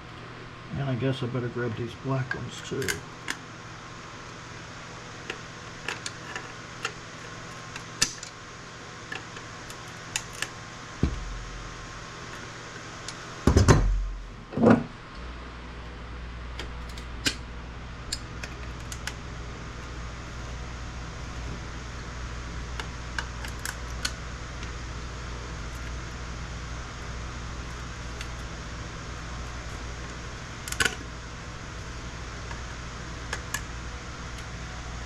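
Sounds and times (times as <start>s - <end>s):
low steady hum: 0.0s - 35.0s
handling noise: 9.1s - 12.5s
thud: 11.0s - 11.6s.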